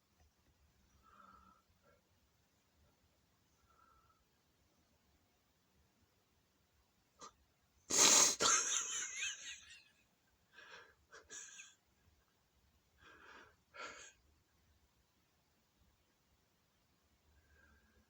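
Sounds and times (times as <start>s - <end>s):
person sneezing loudly: 7.9s - 8.5s.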